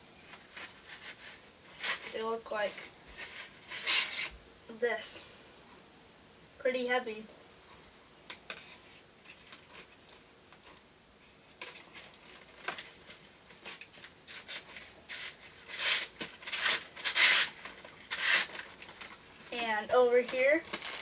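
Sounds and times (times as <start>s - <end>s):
packaging clicks and rustles: 11.5s - 19.5s, 20.2s - 21.0s
packaging crinkling: 11.6s - 21.0s.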